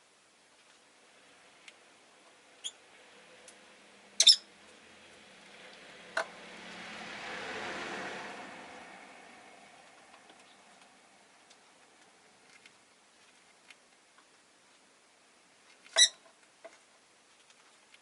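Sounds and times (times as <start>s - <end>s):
passing vehicle: 1.1s - 12.4s
lovebird chirping: 2.6s - 2.8s, 4.2s - 4.5s.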